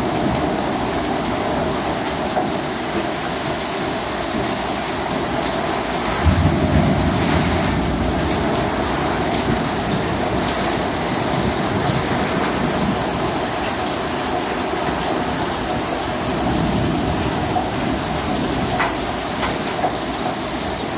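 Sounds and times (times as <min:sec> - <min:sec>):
heavy rain falling: 0:00.0 - 0:20.9.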